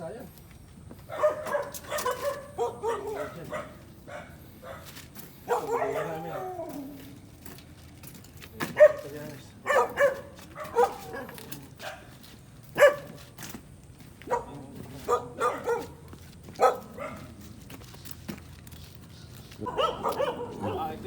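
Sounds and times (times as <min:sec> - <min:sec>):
dog barking: 0:01.1 - 0:07.0, 0:08.6 - 0:13.2, 0:14.2 - 0:17.5, 0:19.6 - 0:21.0.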